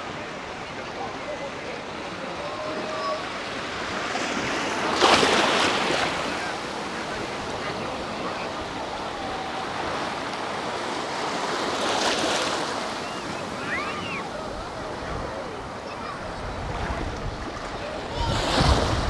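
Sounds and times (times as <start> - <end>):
sea waves breaking on beach: 3.2 - 19.0
wind on microphone: 14.0 - 19.0.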